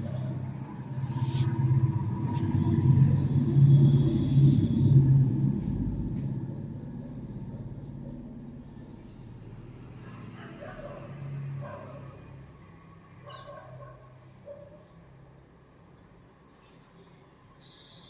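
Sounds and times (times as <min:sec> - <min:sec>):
vehicle engine humming: 0:00.0 - 0:13.2.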